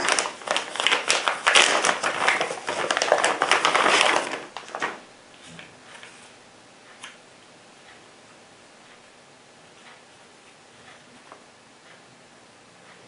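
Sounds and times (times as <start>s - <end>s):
packaging crinkling and rustling: 0.0s - 5.0s.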